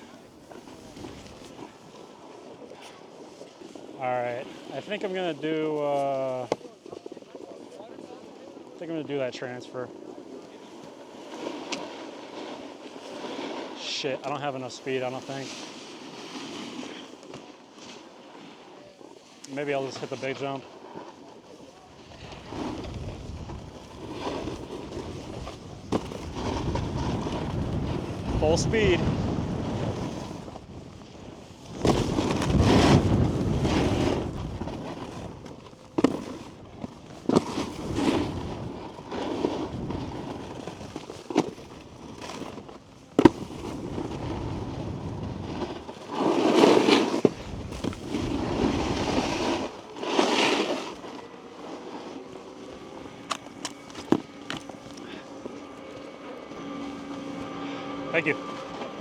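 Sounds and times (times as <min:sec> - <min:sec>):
snowboard knocking: 0:00.0 - 0:07.8, 0:19.6 - 0:57.2
snowboard scraping over snow: 0:00.0 - 0:59.0.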